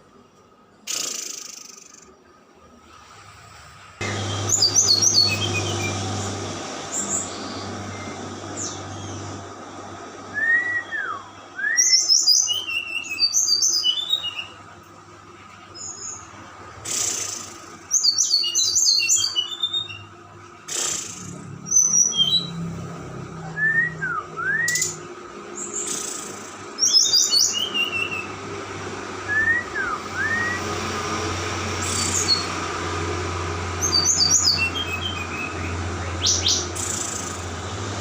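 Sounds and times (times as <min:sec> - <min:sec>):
steady low hum: 0:00.0 - 0:12.1
songbirds chirping: 0:04.0 - 0:10.0
whistled rising and falling notes: 0:04.0 - 0:14.5, 0:23.6 - 0:25.0, 0:29.2 - 0:32.6.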